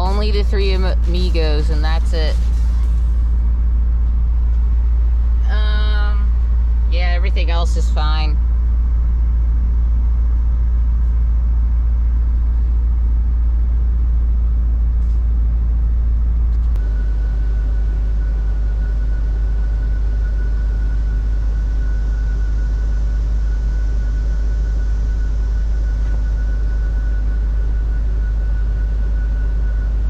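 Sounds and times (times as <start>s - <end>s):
car engine idling: 0.0s - 18.5s
steady high whine: 0.0s - 30.0s.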